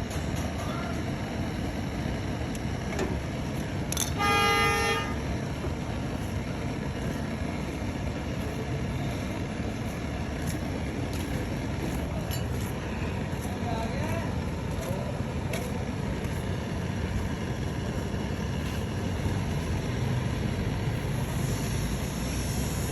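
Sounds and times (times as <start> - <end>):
traffic noise: 0.0 - 22.9
vehicle horn honking: 4.0 - 5.2.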